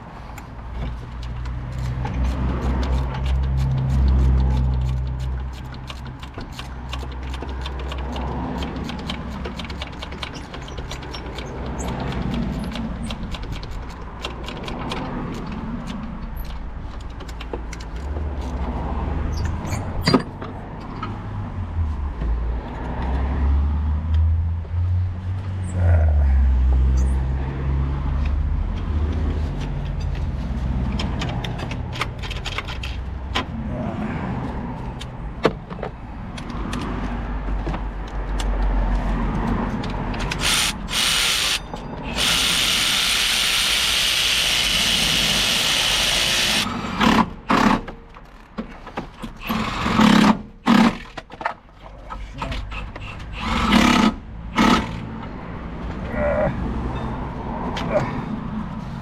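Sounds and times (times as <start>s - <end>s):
power tool running: 40.4s - 47.7s.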